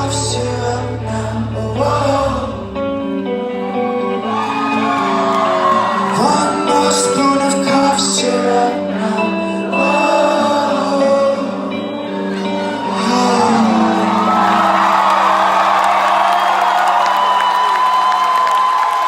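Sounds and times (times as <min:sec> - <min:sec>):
crowd whooping and shouting: 0:03.7 - 0:08.0, 0:11.8 - 0:19.0.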